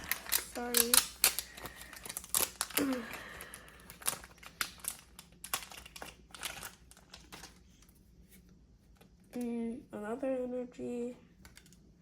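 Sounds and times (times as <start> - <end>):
trading cards clicking and rustling: 0.0 - 8.0.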